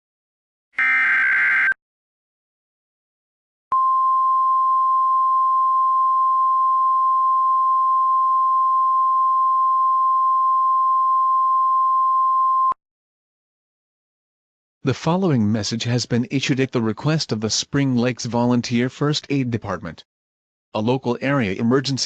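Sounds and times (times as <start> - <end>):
loud high alert tone: 0.8 - 1.8.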